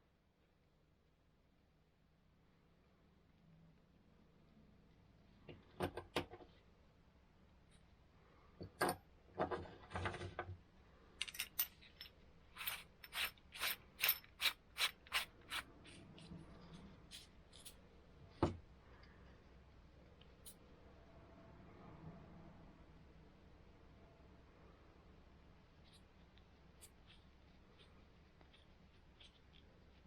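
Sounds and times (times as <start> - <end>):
rubbing while handling: 12.6 - 17.8, 25.8 - 30.0.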